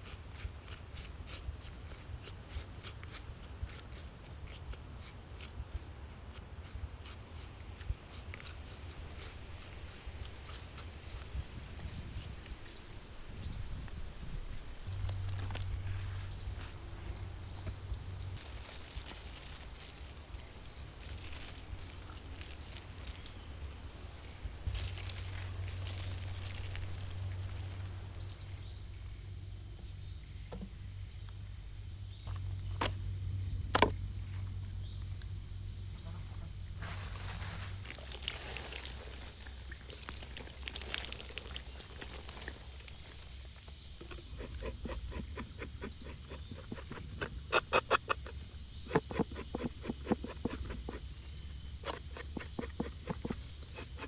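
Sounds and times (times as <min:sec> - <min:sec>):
bird chirping: 0:43.7 - 0:54.0
fine clicking: 0:44.0 - 0:54.0.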